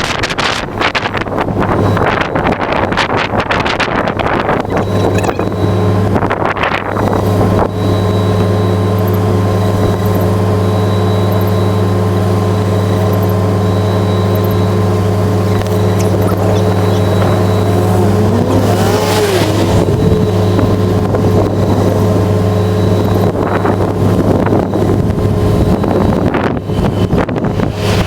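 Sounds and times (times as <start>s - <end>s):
vehicle engine droning: 0.0s - 28.0s
wind on microphone: 15.0s - 28.0s.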